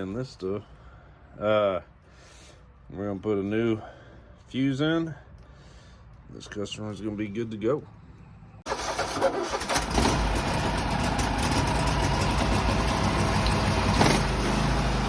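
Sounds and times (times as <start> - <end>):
riding mower engine starting: 8.7 - 15.0.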